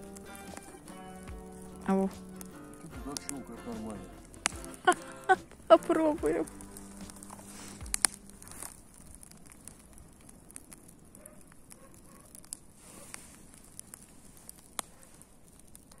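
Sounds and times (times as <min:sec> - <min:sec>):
bonfire crackling and popping: 0:00.0 - 0:16.0
low fire hiss: 0:00.0 - 0:16.0.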